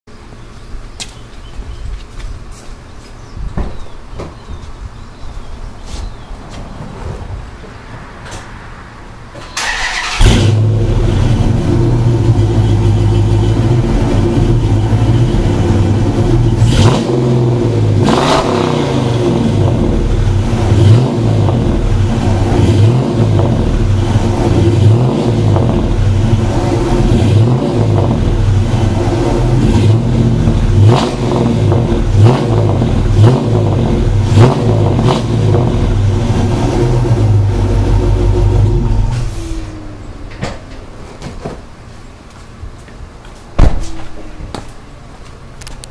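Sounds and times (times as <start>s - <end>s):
car engine starting: 9.2s - 41.1s
loud car engine idling: 23.3s - 40.1s.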